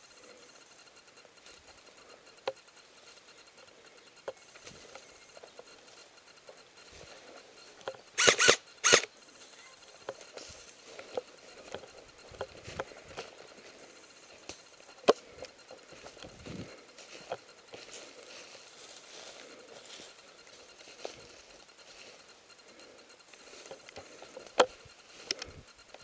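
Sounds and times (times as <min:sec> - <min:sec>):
small clicks of movement: 0:00.9 - 0:09.2, 0:09.9 - 0:16.4, 0:22.5 - 0:26.0.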